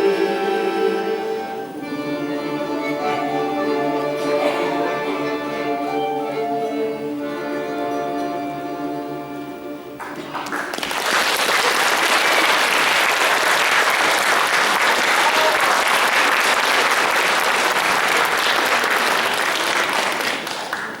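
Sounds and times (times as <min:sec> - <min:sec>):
music chord: 0:00.0 - 0:10.1
audience applause: 0:10.0 - 0:21.0.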